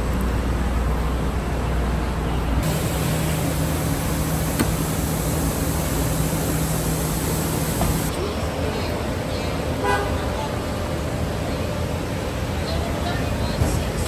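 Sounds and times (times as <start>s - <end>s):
assembly line machinery hum: 2.6s - 8.5s.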